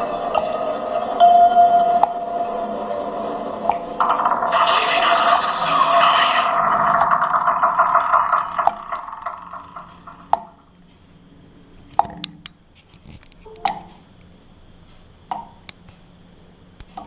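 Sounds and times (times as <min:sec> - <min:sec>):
eerie sustained tone: 0:00.0 - 0:10.7
ringing water drips: 0:06.4 - 0:10.7.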